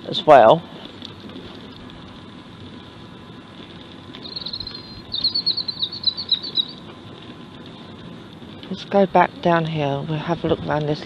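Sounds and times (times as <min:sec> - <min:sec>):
songbird twittering: 0:04.2 - 0:06.8.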